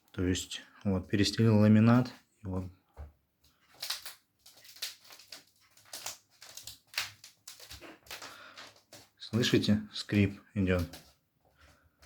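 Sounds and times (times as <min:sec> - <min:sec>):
laminate flooring squeaking: 0:05.2 - 0:09.2.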